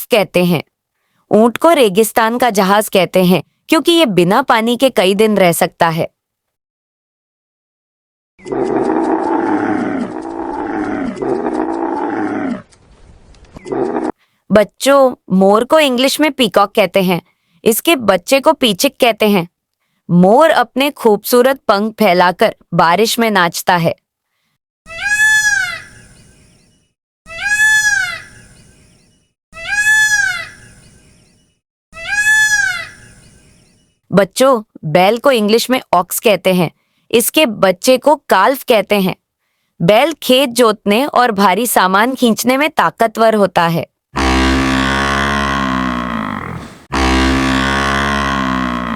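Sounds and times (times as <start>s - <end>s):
camel bellowing: 8.5s - 12.6s, 44.2s - 48.9s
peacock calling: 24.9s - 26.4s, 27.3s - 28.8s, 29.6s - 31.0s, 31.9s - 33.9s.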